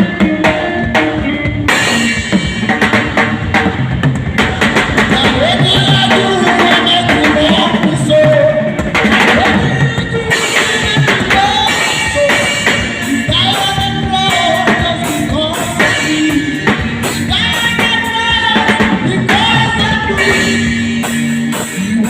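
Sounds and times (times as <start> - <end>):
drum kit playing: 0.0 - 22.0
person singing: 4.4 - 22.0.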